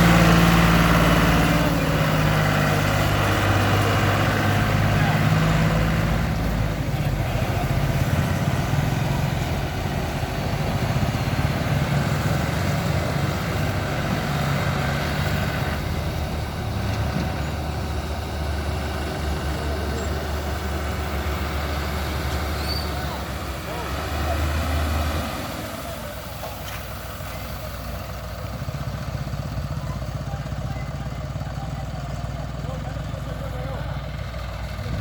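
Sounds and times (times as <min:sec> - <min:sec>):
heavy diesel engine running: 0:00.0 - 0:35.0.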